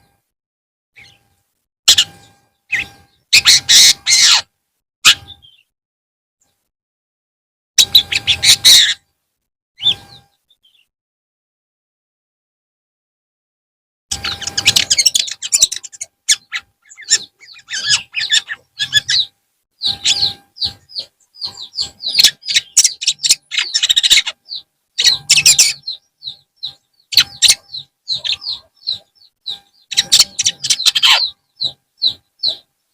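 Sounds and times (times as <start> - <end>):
bird singing high chirps: 1.0 - 5.7, 7.8 - 9.0, 9.8 - 10.9, 14.1 - 32.9
harsh scratchy bird chattering: 1.9 - 5.6, 7.8 - 9.0, 9.8 - 10.3, 14.1 - 32.7.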